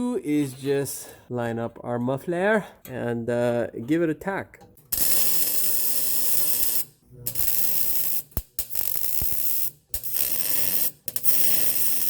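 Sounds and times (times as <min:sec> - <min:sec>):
welding arc crackling and hissing: 0:04.9 - 0:12.0.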